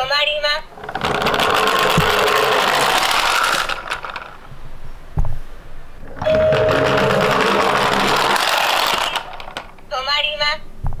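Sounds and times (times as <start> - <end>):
toy car whirring: 0.8 - 4.6, 6.2 - 9.9
short electronic tone: 6.2 - 7.7.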